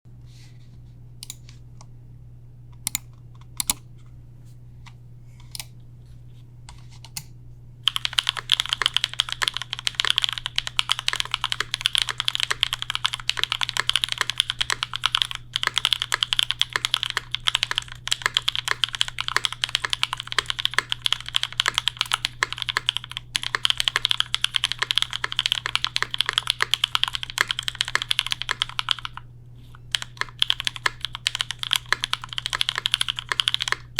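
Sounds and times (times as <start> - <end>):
mechanical keyboard typing: 2.8 - 3.8, 7.9 - 29.2, 29.9 - 33.9.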